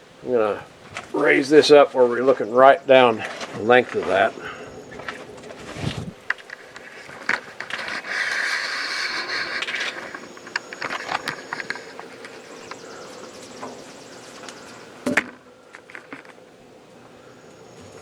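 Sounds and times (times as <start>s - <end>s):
scraping and rubbing: 3.1s - 13.0s.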